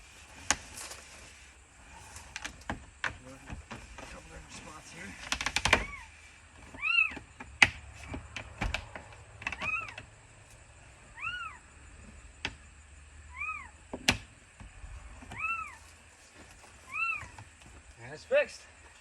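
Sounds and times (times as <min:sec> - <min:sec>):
animal calling: 0:05.8 - 0:07.2, 0:09.5 - 0:10.2, 0:11.0 - 0:11.8, 0:13.2 - 0:13.9, 0:15.3 - 0:15.9, 0:16.8 - 0:17.6.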